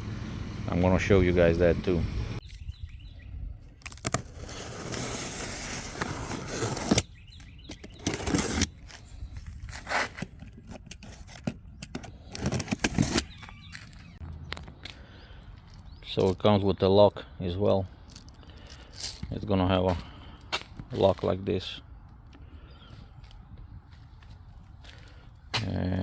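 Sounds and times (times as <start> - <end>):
packaging rustling and scraping: 3.8 - 14.0.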